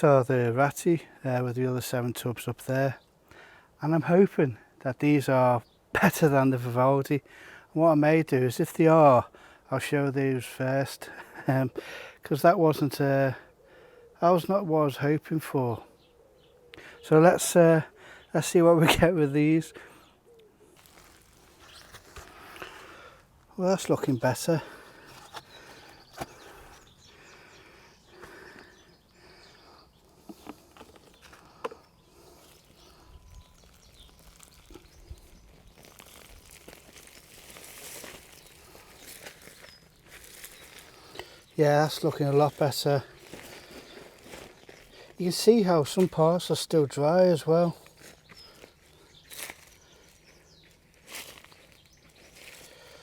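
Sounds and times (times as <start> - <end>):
hands rustling in dry compost: 20.6 - 53.0.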